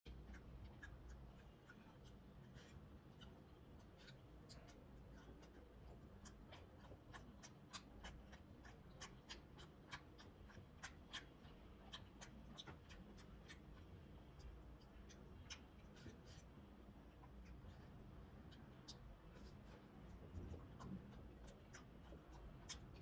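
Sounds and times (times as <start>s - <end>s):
chewing with wet mouth clicks: 0.1s - 23.0s
low steady background: 0.1s - 23.0s.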